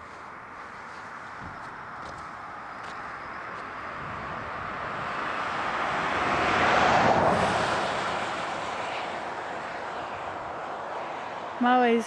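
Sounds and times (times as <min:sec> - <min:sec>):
passing vehicle rushing: 0:00.0 - 0:12.0.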